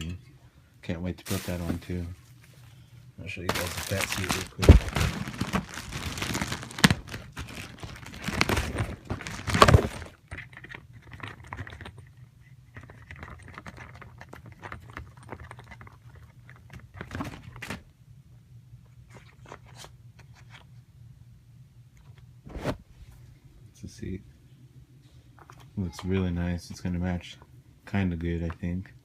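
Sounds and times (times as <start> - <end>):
faint steady hum: 0.0 - 29.0
packaging crinkling and tearing: 1.3 - 2.0, 3.5 - 10.2.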